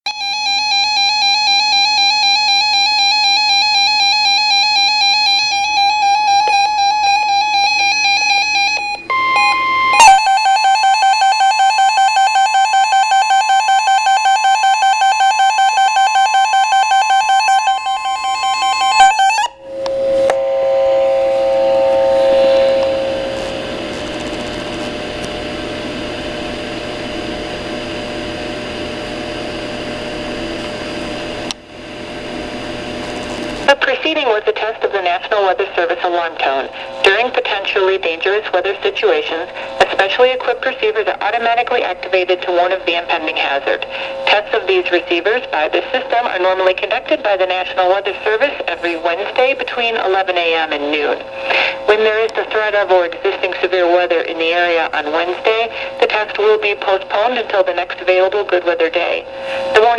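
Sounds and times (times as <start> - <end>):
ringing tone: 0.1 - 23.5
pulsing buzzy alarm tone: 0.1 - 28.6
short high beep: 8.9 - 11.0.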